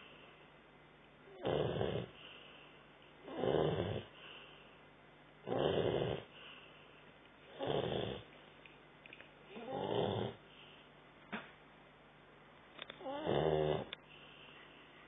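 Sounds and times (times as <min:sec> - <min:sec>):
dog snoring: 0:01.3 - 0:02.2, 0:03.2 - 0:04.3, 0:05.4 - 0:06.4, 0:07.5 - 0:08.3, 0:09.5 - 0:10.4, 0:13.0 - 0:14.0.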